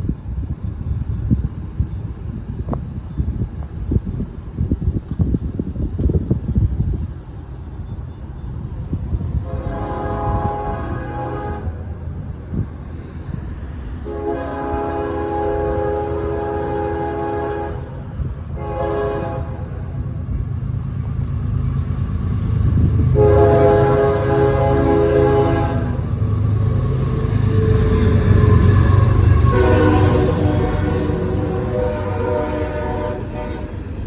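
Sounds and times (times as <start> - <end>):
low train rumble: 0.0 - 34.0
locomotive horn blasts: 9.4 - 11.8, 14.0 - 18.0, 18.6 - 19.9, 23.1 - 26.0, 28.4 - 33.8.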